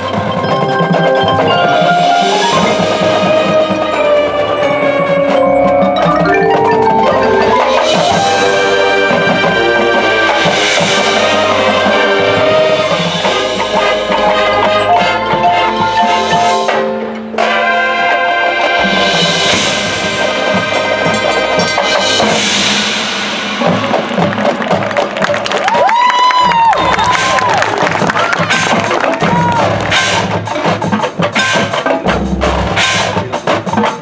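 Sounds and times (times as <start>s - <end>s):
marimbas and xylophones: 0.0s - 17.5s
percussion strokes: 0.0s - 17.6s, 18.7s - 34.0s
marching band playing: 0.0s - 34.0s.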